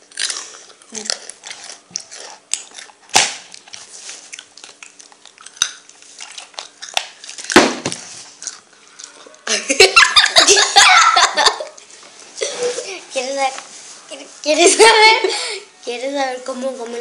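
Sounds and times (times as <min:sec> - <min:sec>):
crunchy chewing and biting: 0:00.0 - 0:09.4.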